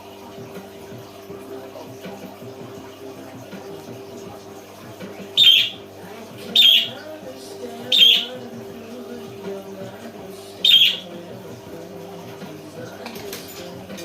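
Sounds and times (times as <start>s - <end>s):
bird calling shrilly: 5.4s - 5.8s, 6.6s - 7.0s, 7.9s - 8.4s, 10.6s - 11.1s.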